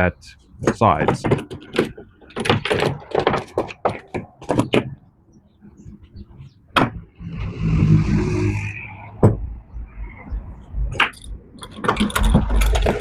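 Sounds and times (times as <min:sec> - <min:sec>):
knocks and clatter on wooden jig: 0:00.6 - 0:05.1, 0:10.9 - 0:13.0
scraping slide: 0:07.2 - 0:09.1.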